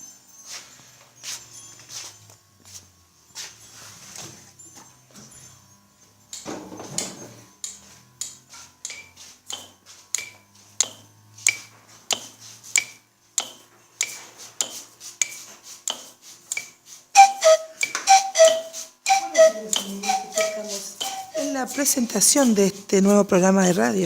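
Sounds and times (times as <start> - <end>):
pitched notes: 17.2 - 22.7.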